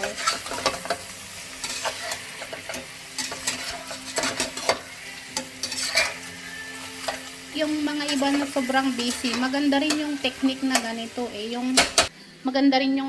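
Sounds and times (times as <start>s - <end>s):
utensil scraping a pan: 0.0s - 11.1s
chicken sizzling in a pan: 0.0s - 12.6s.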